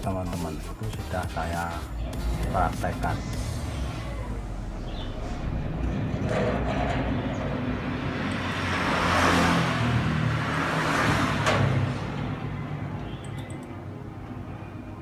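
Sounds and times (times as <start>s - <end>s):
vehicle passing by: 1.8s - 13.2s.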